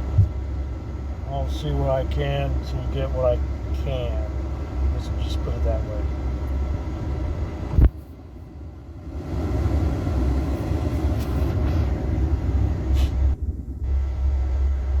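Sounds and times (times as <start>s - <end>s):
low rumble: 6.0s - 15.0s.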